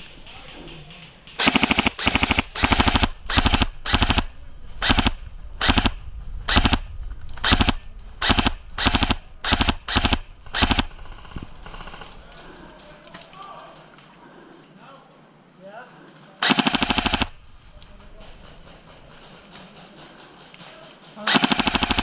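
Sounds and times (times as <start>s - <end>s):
airsoft gun automatic bursts: 1.4s - 6.8s, 7.4s - 12.0s, 16.4s - 17.4s, 21.2s - 22.0s.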